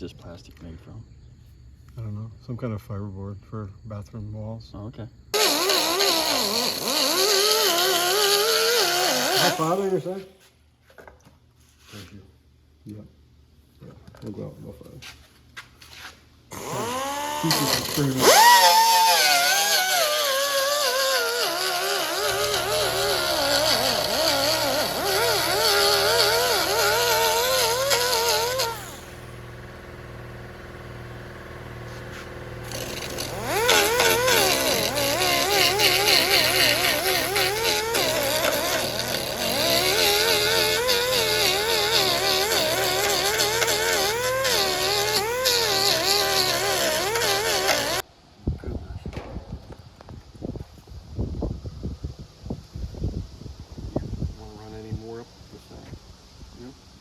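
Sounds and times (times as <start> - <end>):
power tool grinding: 5.4 - 10.3, 16.0 - 48.0.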